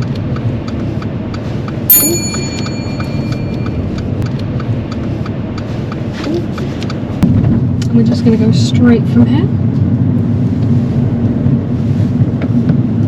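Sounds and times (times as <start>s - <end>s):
car indicator ticking: 0.0s - 7.0s
car engine hum: 0.0s - 13.0s
bright bell-like ding: 1.9s - 3.9s.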